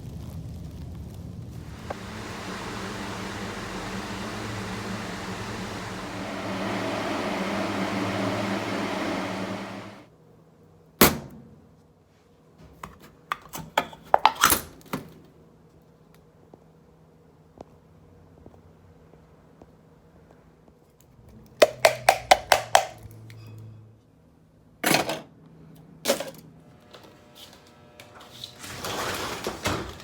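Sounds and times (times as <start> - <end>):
machine whirring hum: 1.6 - 10.1.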